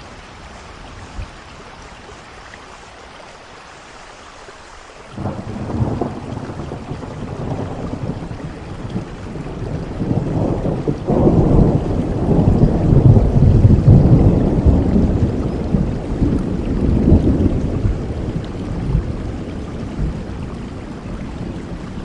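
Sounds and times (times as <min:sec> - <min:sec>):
steady rain falling: 0:00.0 - 0:22.0
thunder rolling: 0:05.2 - 0:22.0.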